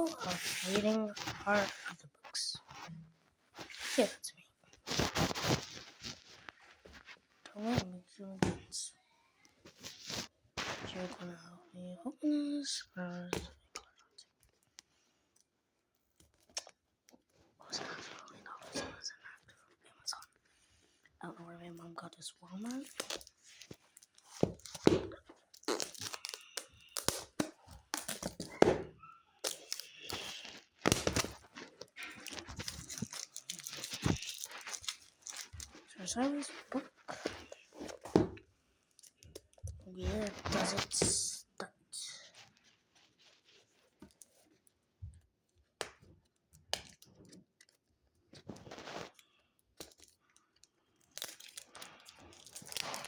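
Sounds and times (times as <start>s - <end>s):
wrapping crinkling and tearing: 0.0s - 3.0s, 4.7s - 8.4s, 9.6s - 11.6s, 21.6s - 38.2s, 38.8s - 41.4s, 46.8s - 53.0s
book pages flipping: 0.0s - 8.8s, 9.4s - 11.6s, 21.7s - 41.4s, 42.1s - 44.8s, 46.7s - 53.0s.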